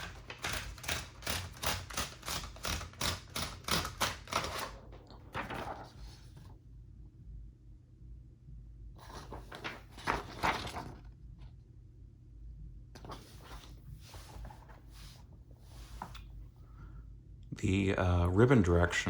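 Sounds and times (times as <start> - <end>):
typewriter click: 0.0 - 4.8
typewriter carriage sliding and rattling: 0.0 - 5.9.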